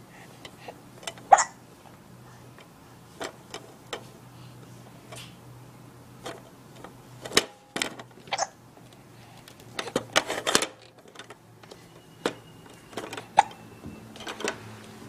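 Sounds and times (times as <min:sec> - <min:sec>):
plastic toys clicking and clacking: 0:06.2 - 0:15.0.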